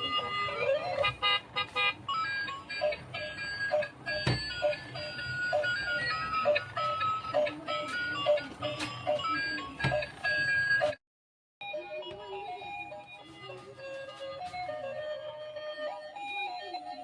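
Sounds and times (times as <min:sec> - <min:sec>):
melody of held notes: 0:00.0 - 0:01.2, 0:02.1 - 0:10.9.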